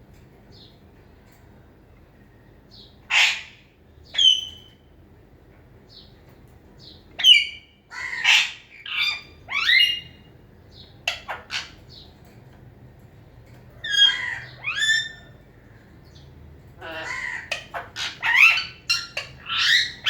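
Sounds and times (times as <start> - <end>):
parrot squawking: 3.1 - 3.6, 7.2 - 10.2, 11.0 - 11.8, 13.8 - 15.4, 16.8 - 20.0.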